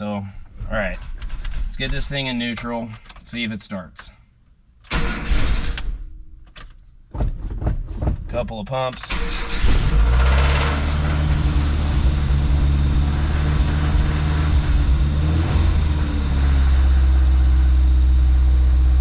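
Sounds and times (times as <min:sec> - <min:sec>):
car engine idling: 0:09.1 - 0:19.0.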